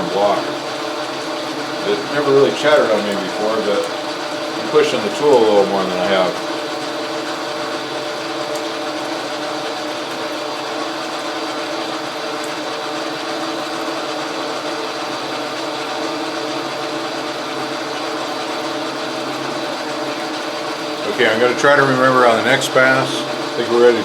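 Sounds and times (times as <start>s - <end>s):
metal lathe running: 0.0s - 24.0s.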